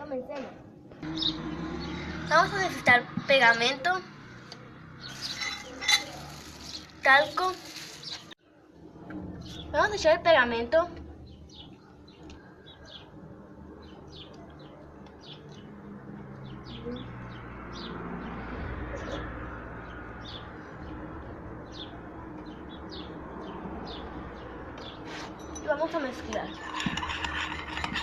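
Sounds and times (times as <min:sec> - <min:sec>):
small birds chirping: 0:04.6 - 0:08.4, 0:11.2 - 0:13.2, 0:13.8 - 0:28.0.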